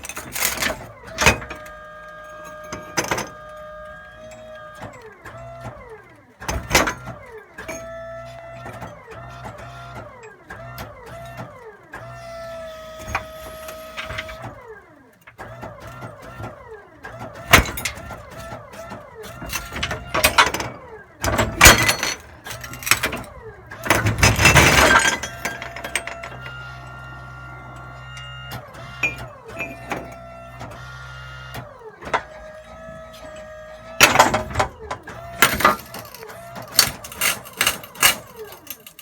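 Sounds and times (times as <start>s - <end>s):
glass breaking: 35.4s - 39.0s.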